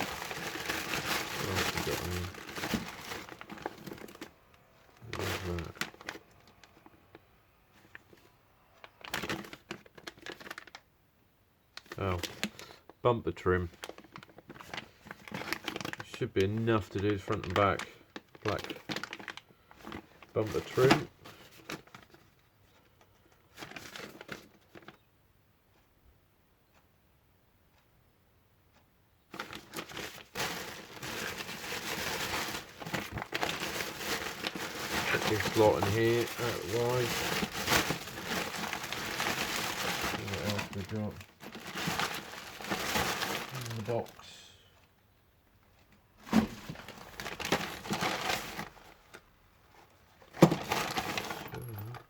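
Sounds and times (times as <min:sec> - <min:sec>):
plastic bags crinkling: 0:00.0 - 0:07.2, 0:08.8 - 0:10.8, 0:13.5 - 0:22.3, 0:29.3 - 0:44.4, 0:46.2 - 0:52.0.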